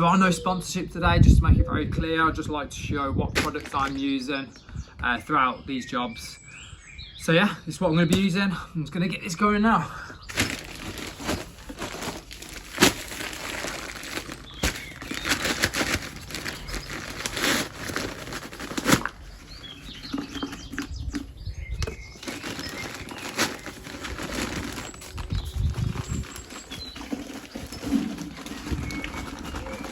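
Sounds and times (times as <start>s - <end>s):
sack rustling and flapping: 10.3s - 19.5s, 22.2s - 29.9s.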